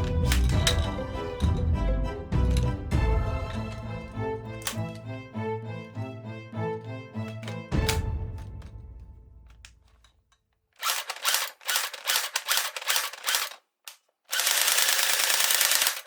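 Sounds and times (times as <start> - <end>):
background music: 0.0 - 10.0
toy gun click: 4.6 - 5.0, 10.8 - 16.0
toy gun full-auto burst: 10.8 - 13.6, 14.3 - 16.0.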